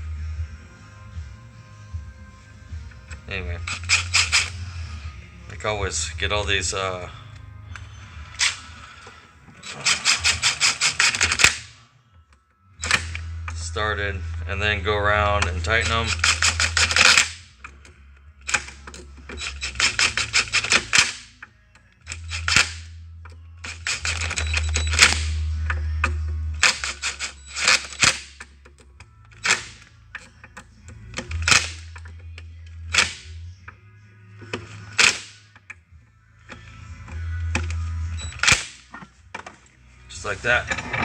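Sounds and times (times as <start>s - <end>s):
impact driver hammer rattling: 2.9s - 4.8s, 5.5s - 11.8s, 12.8s - 33.7s.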